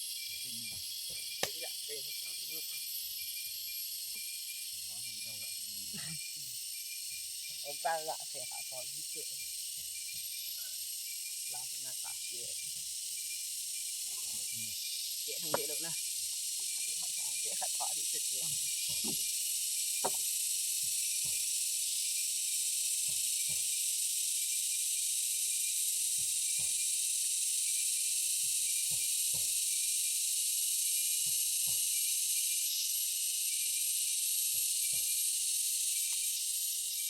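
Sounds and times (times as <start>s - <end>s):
insect chorus drone: 0.0s - 37.0s.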